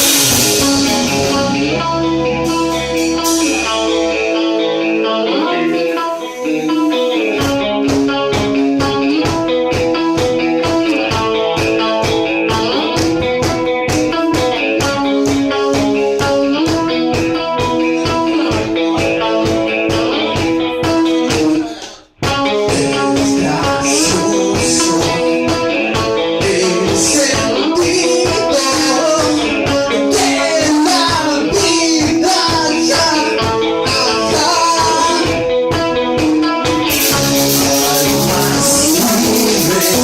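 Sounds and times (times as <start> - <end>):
electric guitar bending notes: 0.0 - 40.0
live blues-rock band: 0.0 - 40.0.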